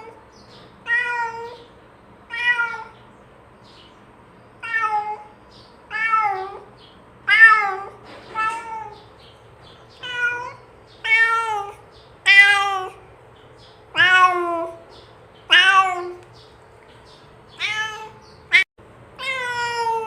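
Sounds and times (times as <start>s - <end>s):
cat meowing: 0.8s - 1.7s, 2.3s - 3.0s, 4.6s - 5.3s, 5.9s - 6.7s, 7.3s - 9.1s, 10.0s - 13.1s, 13.9s - 14.8s, 15.5s - 16.3s, 17.5s - 20.0s.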